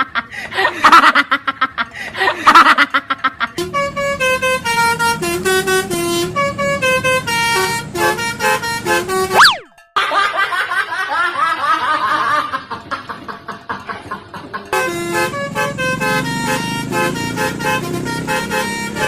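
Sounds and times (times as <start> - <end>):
multi-tone bus air horns: 3.6 - 9.6, 14.7 - 19.0.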